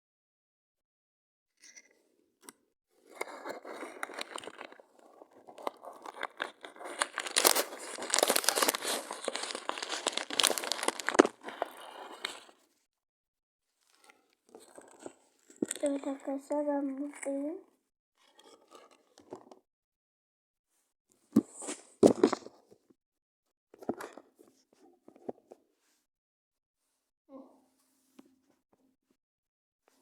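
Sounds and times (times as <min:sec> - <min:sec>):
paper or plastic crinkling: 0:03.1 - 0:12.6.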